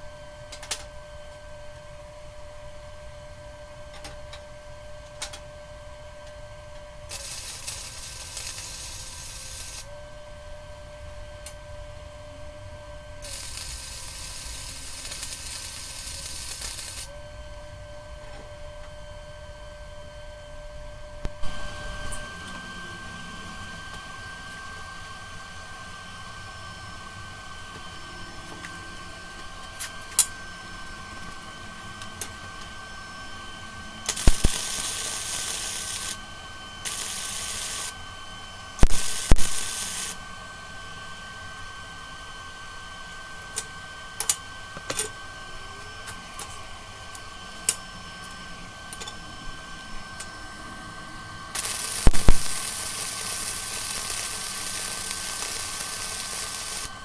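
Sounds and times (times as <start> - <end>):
steady hum: 0.0 - 24.0, 33.9 - 40.6, 51.5 - 57.0
hissing bursts with sharp crack: 7.1 - 9.9, 13.2 - 17.1, 34.1 - 36.2, 36.8 - 38.0, 38.8 - 40.2, 51.6 - 57.0.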